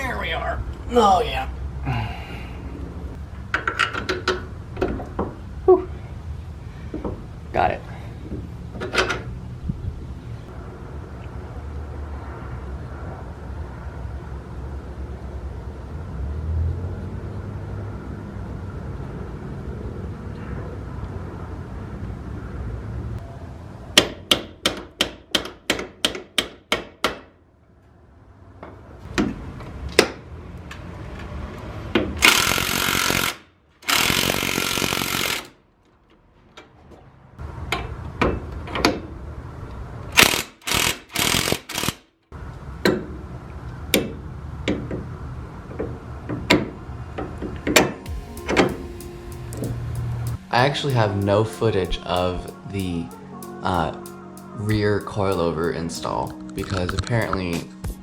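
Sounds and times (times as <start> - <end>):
sharp knocks on metal parts: 24.0 - 27.3
power tool bursts: 32.2 - 35.5, 40.2 - 42.0.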